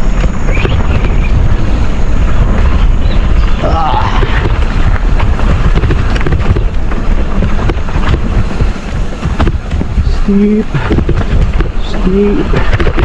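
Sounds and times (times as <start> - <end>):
bike rattling over rough trail: 0.0 - 13.0
wind buffeting microphone: 0.0 - 13.0.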